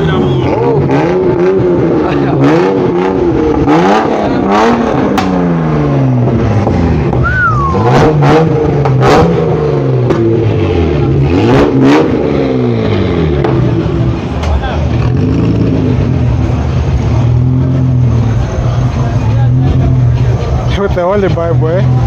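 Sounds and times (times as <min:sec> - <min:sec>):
car engine revving hard: 0:00.0 - 0:20.3
short high squeal: 0:07.2 - 0:07.9.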